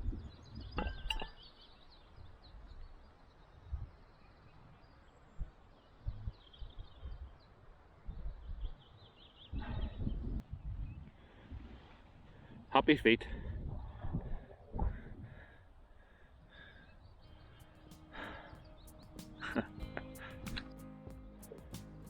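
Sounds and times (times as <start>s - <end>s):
small birds chirping: 16.6s - 22.0s.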